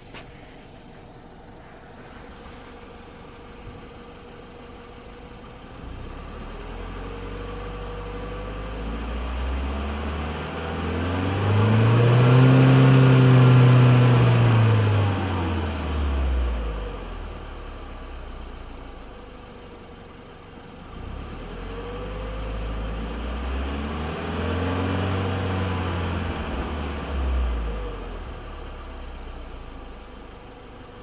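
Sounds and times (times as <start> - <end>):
car engine revving: 5.6 - 18.0, 20.9 - 29.9.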